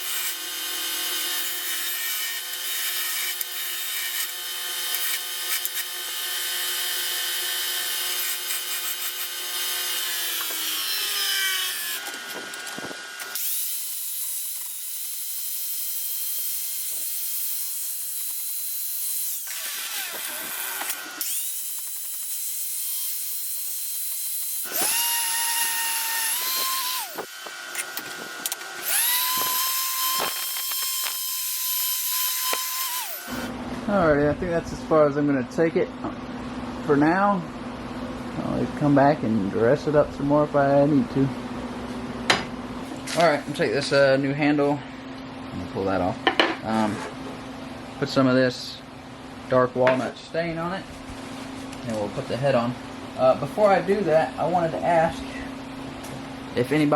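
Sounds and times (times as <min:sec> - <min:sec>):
electric grinder whining: 0:00.0 - 0:33.6.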